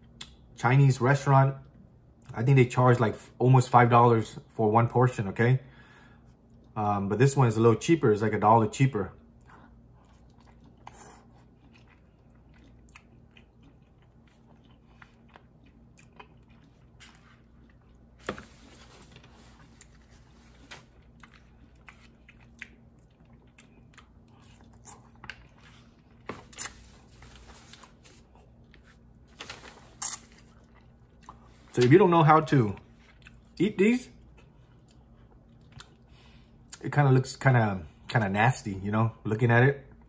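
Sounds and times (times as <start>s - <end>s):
person chewing: 9.2s - 29.3s, 29.9s - 31.8s, 32.8s - 33.6s, 34.2s - 36.8s.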